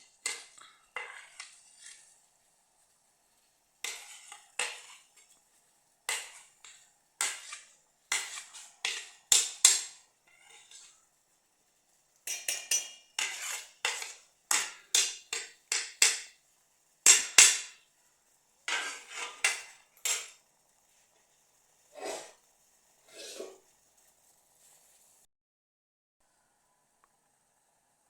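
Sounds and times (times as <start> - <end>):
metal cookware clattering: 0.0 - 2.2, 3.8 - 5.4, 6.1 - 11.0, 12.2 - 16.4, 17.0 - 17.9, 18.7 - 20.4.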